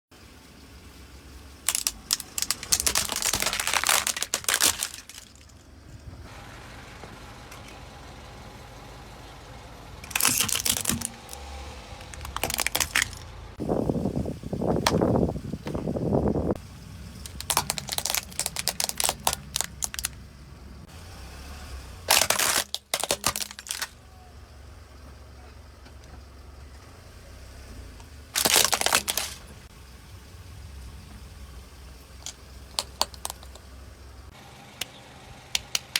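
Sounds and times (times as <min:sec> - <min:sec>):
tyre crunching objects: 0:01.7 - 0:05.6, 0:10.0 - 0:13.3, 0:17.2 - 0:20.2, 0:22.1 - 0:24.0, 0:28.4 - 0:29.5, 0:32.2 - 0:33.6.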